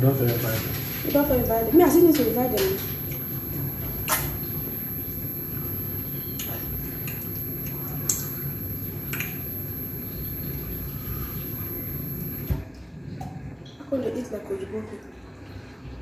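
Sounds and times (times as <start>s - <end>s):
thin high whine: 0.0s - 12.7s
steady low hum: 0.0s - 16.0s.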